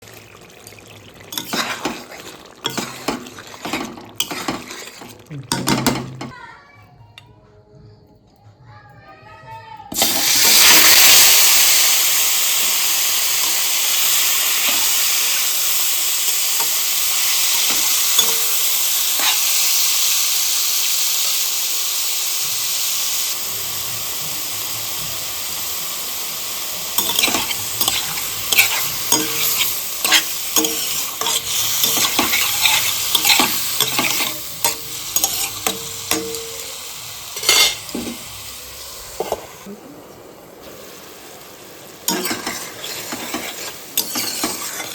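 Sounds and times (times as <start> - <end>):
food sizzling in hot oil: 0.0 - 6.3, 9.9 - 44.9
spoon scraping a pan: 1.3 - 6.3, 16.3 - 19.8, 26.9 - 36.8, 37.4 - 38.3, 42.1 - 44.9.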